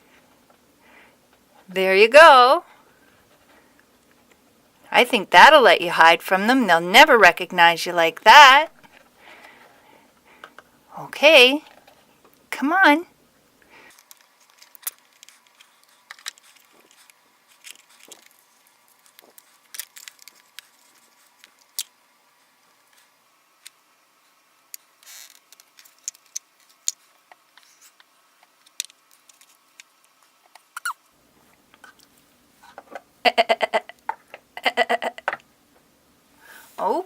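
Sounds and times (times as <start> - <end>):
faint steady hum: 0.0 - 37.0
plastic toys clicking and scraping: 13.9 - 22.0, 24.7 - 30.7.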